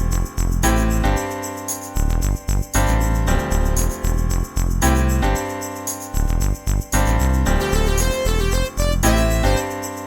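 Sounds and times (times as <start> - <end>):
upbeat instrumental music: 7.5 - 10.0.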